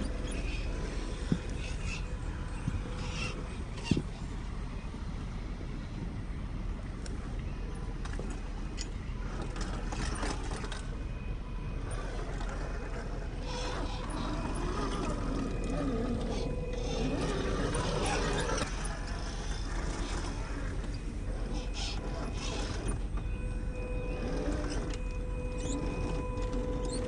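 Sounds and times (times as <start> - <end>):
toy car motor whining: 0.0 - 4.2, 11.8 - 27.0.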